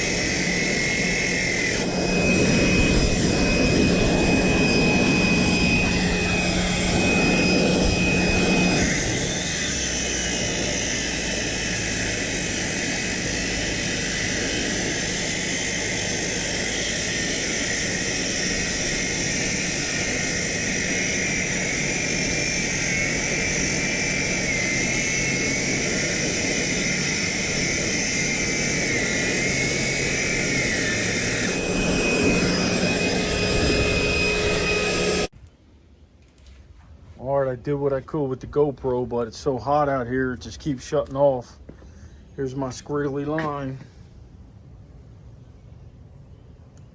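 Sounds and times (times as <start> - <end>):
circular saw cutting concrete: 0.0 - 35.3.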